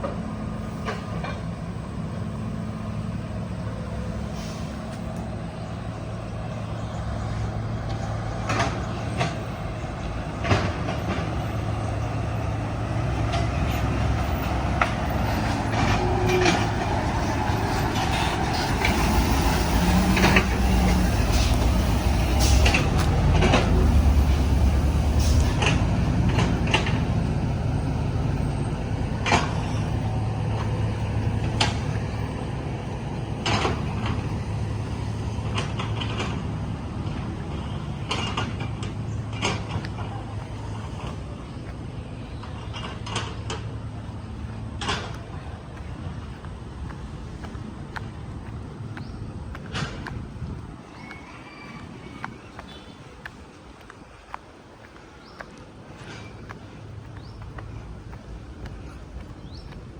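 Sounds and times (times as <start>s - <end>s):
heavy machinery diesel engine: 0.0s - 59.9s
sharp clanks and knocks: 44.8s - 45.4s.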